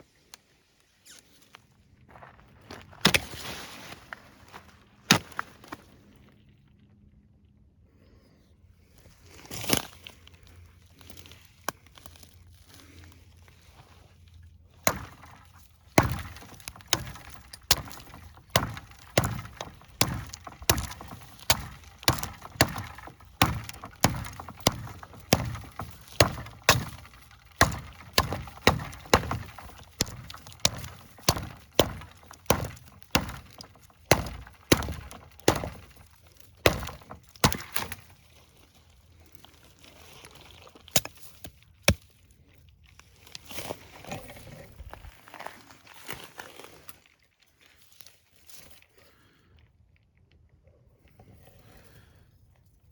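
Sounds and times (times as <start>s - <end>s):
knife chopping strikes: 14.8s - 38.1s.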